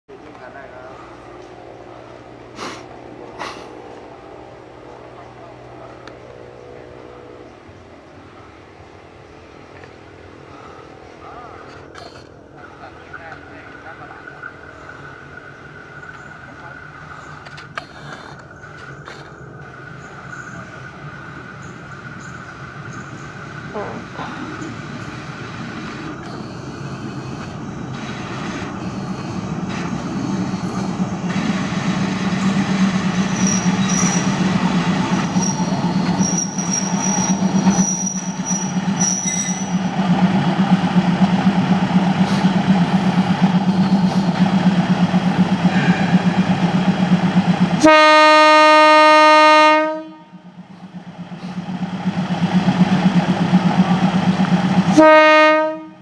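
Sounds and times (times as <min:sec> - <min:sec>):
diesel locomotive engine hum: 0:00.1 - 0:56.0
train horn blast: 0:47.8 - 0:50.5, 0:54.9 - 0:56.0.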